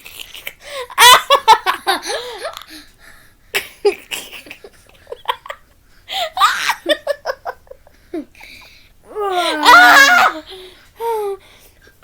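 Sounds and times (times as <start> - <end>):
children laughing and squealing: 9.3 - 10.5.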